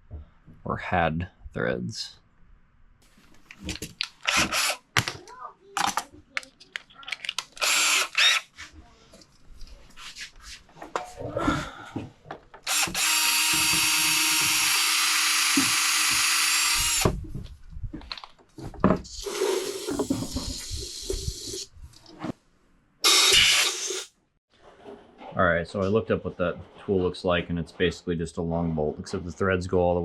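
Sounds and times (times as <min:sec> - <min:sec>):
clicks and knocks of parts handled: 0:03.4 - 0:07.8, 0:18.0 - 0:18.9
handheld power tool running: 0:04.3 - 0:04.8, 0:07.6 - 0:08.4, 0:12.7 - 0:17.2.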